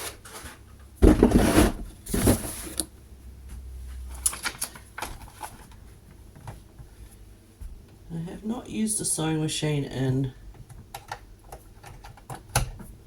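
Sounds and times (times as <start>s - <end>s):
rustling and clatter: 0.0s - 2.8s.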